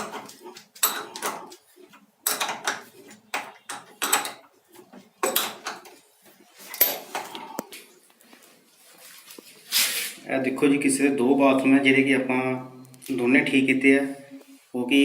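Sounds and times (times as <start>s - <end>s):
plumbing tools clanking: 0.0s - 7.8s.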